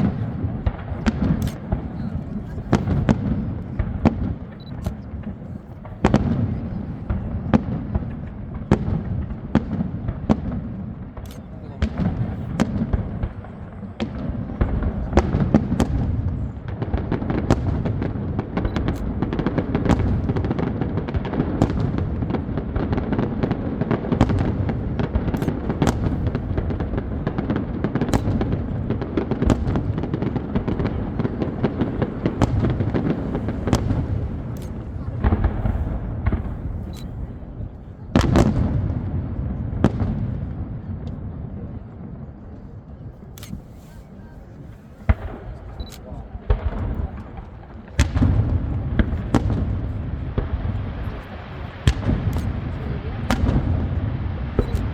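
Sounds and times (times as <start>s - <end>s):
firework crackling: 0.0s - 40.6s, 44.5s - 54.9s
low rolling rumble: 24.5s - 37.9s.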